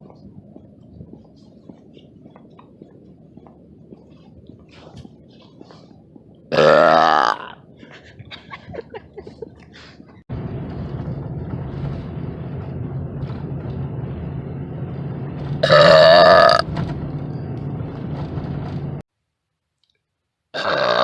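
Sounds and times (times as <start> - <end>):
low rumbling background: 0.0 - 19.1
loud drawn-out burp: 6.5 - 7.6, 15.6 - 16.6, 20.6 - 21.0.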